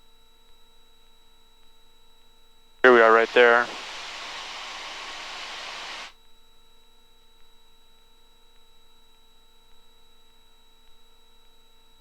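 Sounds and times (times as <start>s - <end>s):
faint electrical hum: 2.9s - 6.1s
radio static hiss: 2.9s - 6.1s.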